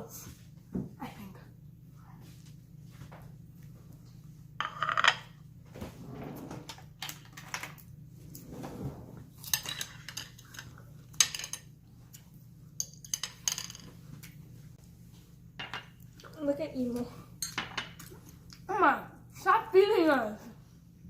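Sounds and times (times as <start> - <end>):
dishes and cutlery clinking: 4.6 - 5.4, 9.4 - 11.7, 12.8 - 14.0, 17.4 - 18.1.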